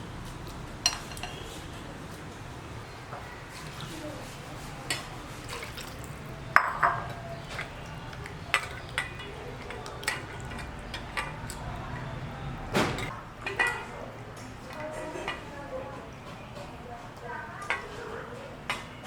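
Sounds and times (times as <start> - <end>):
bowl and utensils clinking: 0.4 - 15.5.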